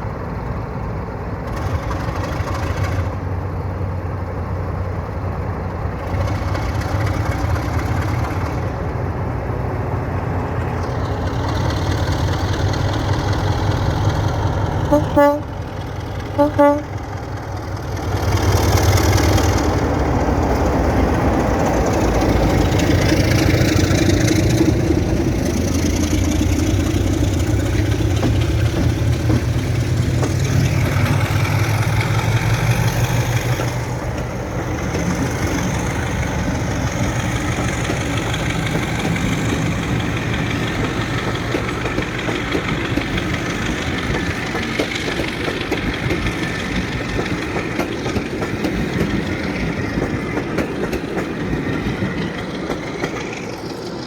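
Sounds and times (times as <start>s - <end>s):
diesel locomotive engines: 0.0s - 54.0s.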